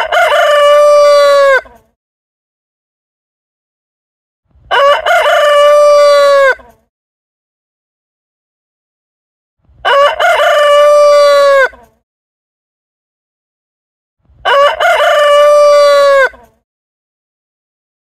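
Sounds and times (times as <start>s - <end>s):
rooster crowing: 0.0s - 1.8s, 4.7s - 6.7s, 9.8s - 11.8s, 14.4s - 16.5s.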